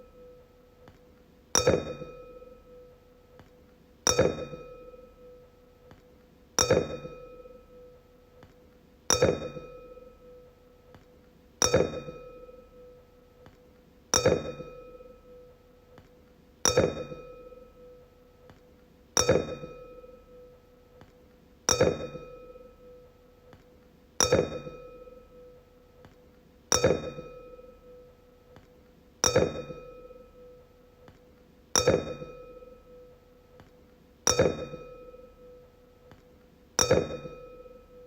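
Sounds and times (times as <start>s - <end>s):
wine glass struck ringing: 1.6s - 2.8s, 6.6s - 7.9s, 9.1s - 10.4s, 16.7s - 18.0s, 21.7s - 23.0s, 24.2s - 25.5s, 26.7s - 28.1s, 29.2s - 30.6s, 31.8s - 33.1s, 34.3s - 35.6s, 36.8s - 38.0s.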